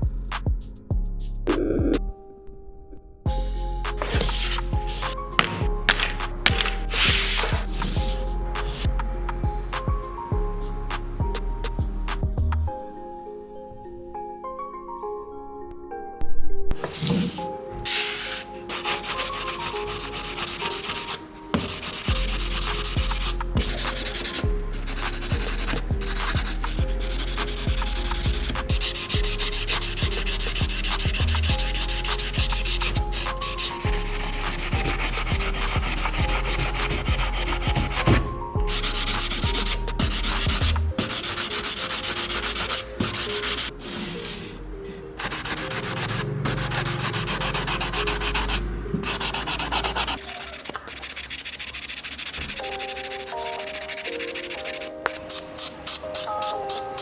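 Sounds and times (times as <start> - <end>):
sanding metal: 3.6 - 9.0, 17.0 - 38.1, 38.7 - 44.5, 45.2 - 57.0.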